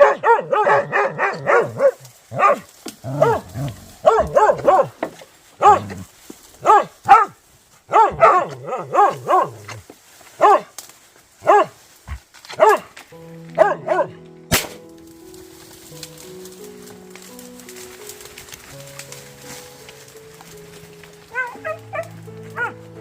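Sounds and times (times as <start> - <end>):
music: 0.0 - 5.0, 5.6 - 6.0, 7.9 - 9.6, 11.4 - 23.0
dogs barking: 0.0 - 9.8, 10.4 - 10.8, 11.4 - 14.2, 21.3 - 23.0.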